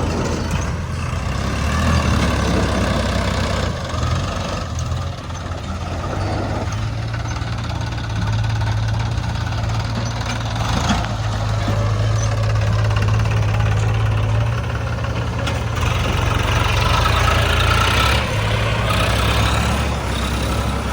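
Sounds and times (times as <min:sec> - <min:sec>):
heavy diesel engine running: 0:00.0 - 0:20.9.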